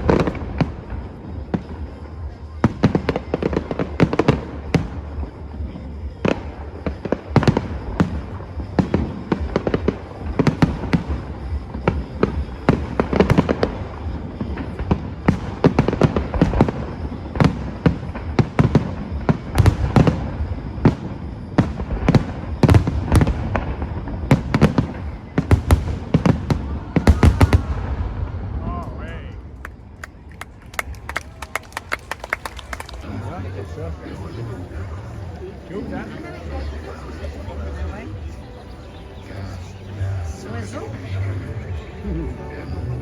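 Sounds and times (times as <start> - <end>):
fireworks bangs and cracks: 0.0 - 35.3.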